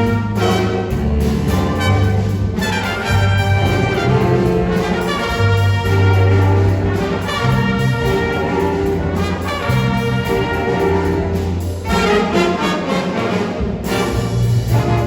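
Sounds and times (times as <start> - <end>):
brass instruments holding notes: 0.0 - 15.0
steady bass line: 0.0 - 15.0.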